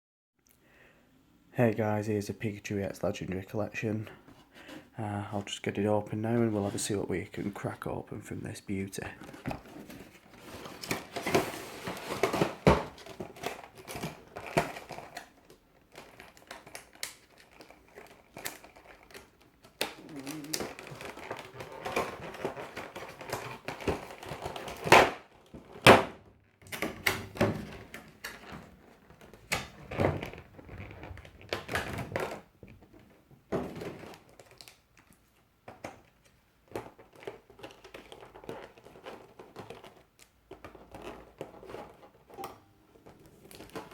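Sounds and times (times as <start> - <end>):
packaging crinkling: 9.0 - 25.8, 33.8 - 35.2.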